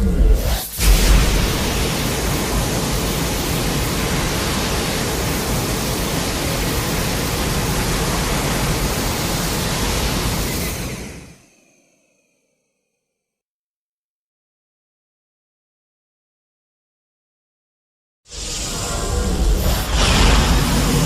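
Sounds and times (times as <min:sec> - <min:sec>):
steady noise rush: 0:00.0 - 0:12.3, 0:18.3 - 0:21.0.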